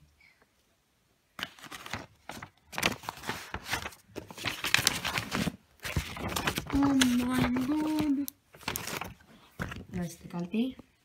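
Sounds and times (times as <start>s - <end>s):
paper and packaging rustling: 1.4s - 10.8s.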